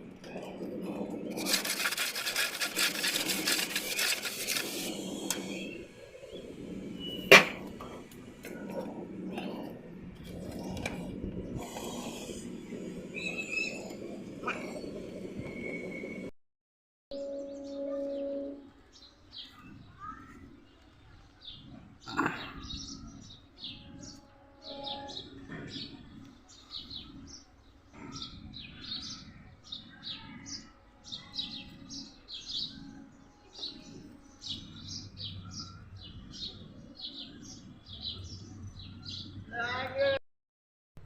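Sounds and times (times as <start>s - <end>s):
small birds chirping: 0.0s - 16.2s, 17.2s - 40.2s.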